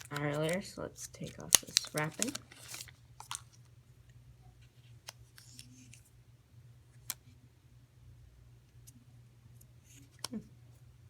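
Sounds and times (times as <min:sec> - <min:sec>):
plastic wrap clicks and crinkles: 0:00.0 - 0:03.7.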